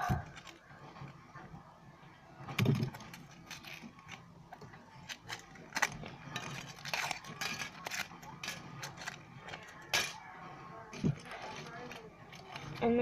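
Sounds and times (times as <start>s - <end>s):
scissors cutting tinfoil: 4.9s - 10.2s, 10.9s - 13.0s.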